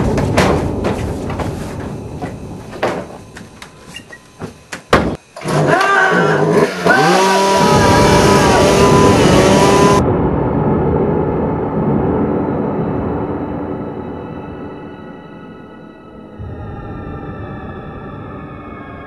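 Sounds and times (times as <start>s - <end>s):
scattered knocks: 0.0s - 5.2s
engine revving: 5.4s - 10.0s.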